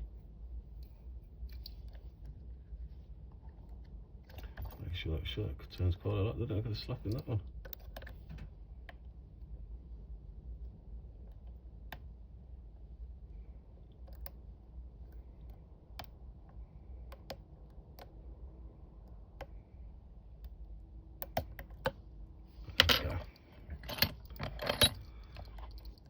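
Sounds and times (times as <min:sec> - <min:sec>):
padlock clattering rattle: 0:22.6 - 0:26.0
lock pick metallic clicks: 0:22.7 - 0:26.0.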